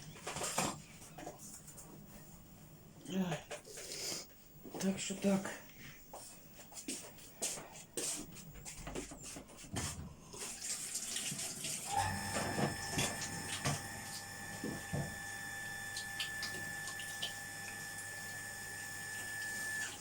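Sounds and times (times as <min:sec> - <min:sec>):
tap water running into sink: 0:10.4 - 0:20.0.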